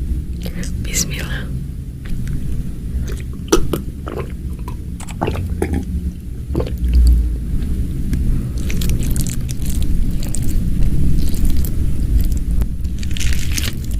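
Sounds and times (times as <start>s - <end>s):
low rumble: 0.0s - 13.9s
crisp crunchy chewing: 2.1s - 5.9s, 8.1s - 13.9s.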